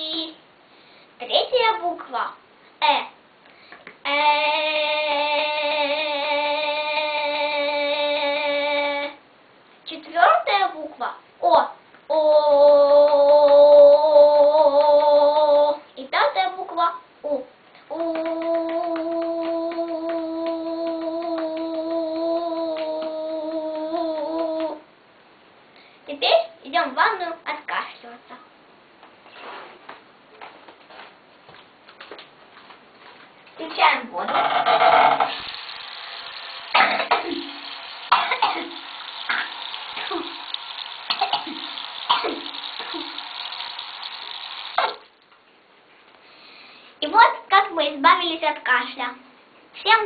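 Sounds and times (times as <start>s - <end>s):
child singing long vowel: 4.0s - 9.2s, 12.1s - 15.9s, 17.3s - 24.9s
hand tapping chest: 18.0s - 24.8s
water running from a tap: 35.2s - 45.1s
child coughing: 36.8s - 37.2s, 38.1s - 38.8s, 41.2s - 42.4s.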